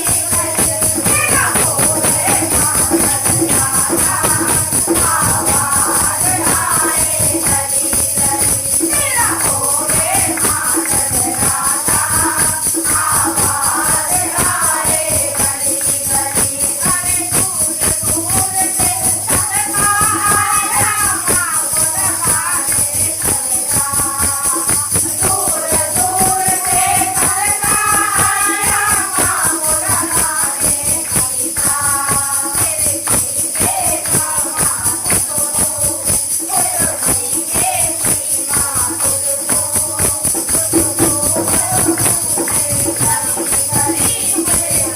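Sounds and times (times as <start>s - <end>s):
devotional singing: 0.0s - 44.9s
jingling hand percussion: 0.0s - 44.9s.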